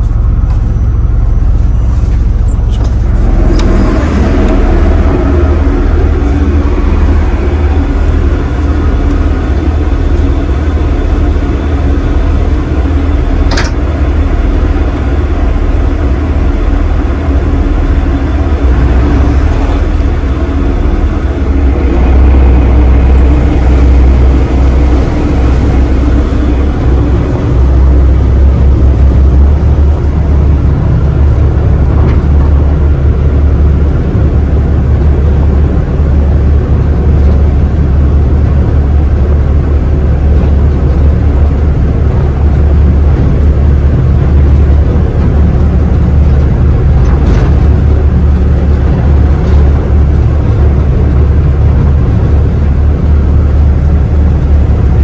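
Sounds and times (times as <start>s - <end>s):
ferry engine droning: 0.0s - 55.0s
sharp click: 13.5s - 13.8s.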